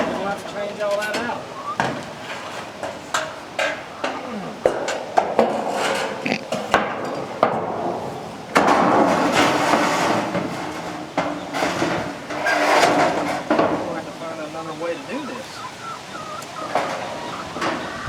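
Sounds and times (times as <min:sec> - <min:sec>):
rustling or scraping: 0:00.0 - 0:03.8, 0:05.4 - 0:06.8, 0:08.9 - 0:14.0
sharp knocks and clatters: 0:04.7 - 0:13.9.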